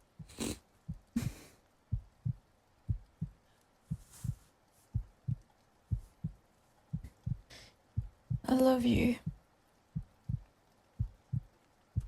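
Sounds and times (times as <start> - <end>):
heartbeat thumps: 0.1 - 12.0
slow breathing: 7.0 - 8.1.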